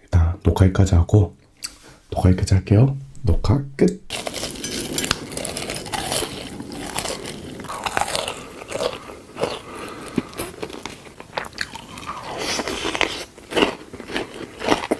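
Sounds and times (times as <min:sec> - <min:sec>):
chewing strawberries: 0:04.1 - 0:14.9.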